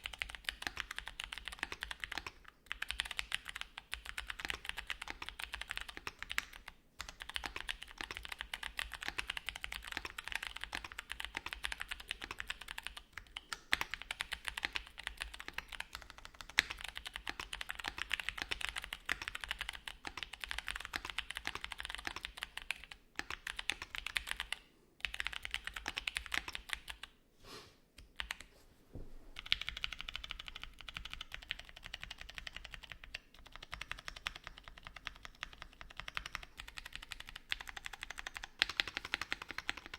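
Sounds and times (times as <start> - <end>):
mechanical keyboard typing: 0.0 - 27.1, 28.1 - 28.5, 29.4 - 39.9.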